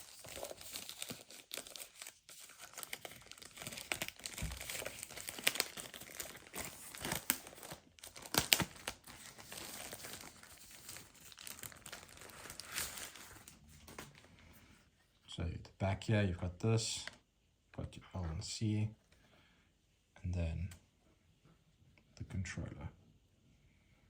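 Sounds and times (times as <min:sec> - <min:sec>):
packaging crinkling and tearing: 0:00.0 - 0:14.2.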